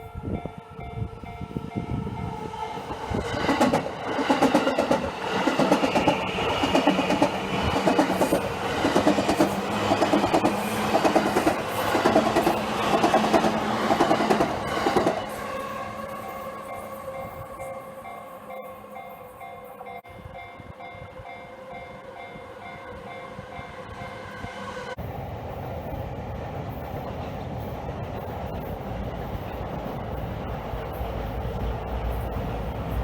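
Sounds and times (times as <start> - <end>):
crossing warning bell ringing: 0.0 - 3.6, 14.3 - 24.8.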